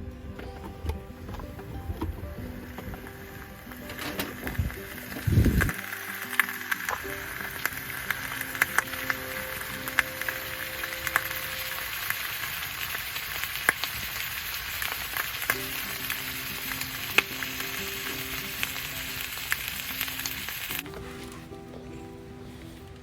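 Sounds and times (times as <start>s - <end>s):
food sizzling on a grill: 2.7s - 20.8s.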